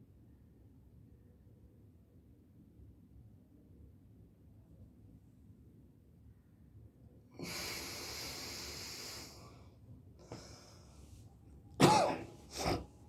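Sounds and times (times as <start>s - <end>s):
person breathing forcefully: 7.4s - 9.6s, 12.1s - 12.9s.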